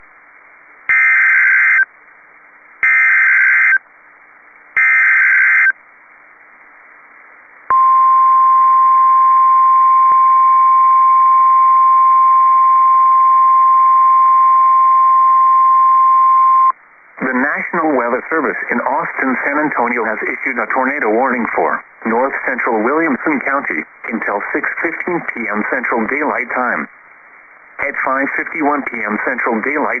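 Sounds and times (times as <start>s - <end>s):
faint hiss: 0.0s - 15.7s, 16.7s - 30.0s
warbling data bursts: 0.9s - 1.9s, 2.8s - 3.8s, 4.8s - 5.8s.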